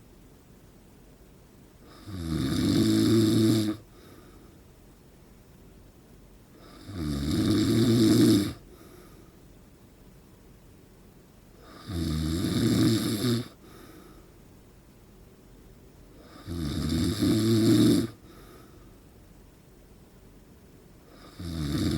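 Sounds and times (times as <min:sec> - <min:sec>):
man snoring: 0:01.9 - 0:03.8, 0:06.6 - 0:08.6, 0:11.6 - 0:13.8, 0:16.2 - 0:18.3, 0:21.1 - 0:21.9
faint breath: 0:03.9 - 0:04.8, 0:08.6 - 0:09.5, 0:13.5 - 0:14.5, 0:18.2 - 0:19.2.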